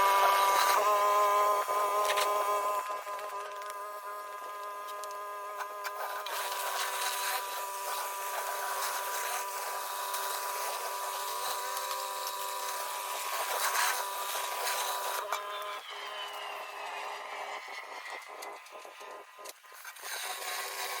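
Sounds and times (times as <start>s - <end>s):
machine whine: 0.0s - 21.0s
high-pressure water spray hissing: 6.0s - 21.0s.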